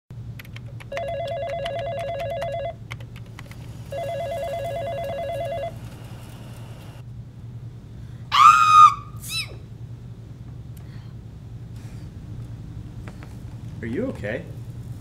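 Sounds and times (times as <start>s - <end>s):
steady low hum: 0.2s - 15.0s
keyboard typing clicks: 0.4s - 3.6s
desk telephone ringing: 0.9s - 2.8s, 3.9s - 5.9s.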